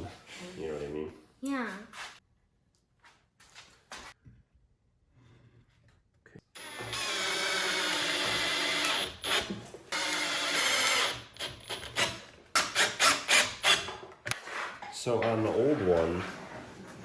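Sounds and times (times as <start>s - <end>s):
cordless drill whining: 6.6s - 13.8s.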